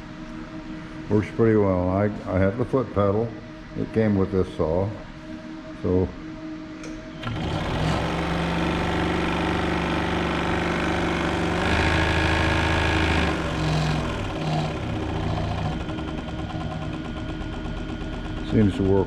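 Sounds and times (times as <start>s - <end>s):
scroll saw motor hum: 7.2s - 18.7s.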